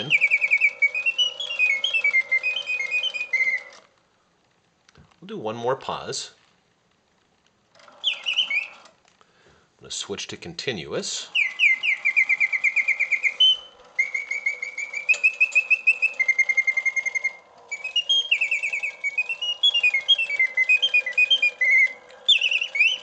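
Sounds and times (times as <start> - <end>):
mechanical bird whistle trilling: 0.0 - 3.9, 7.8 - 9.0, 11.2 - 23.0
clockwork whirring: 0.0 - 4.0, 7.7 - 9.0, 10.4 - 23.0.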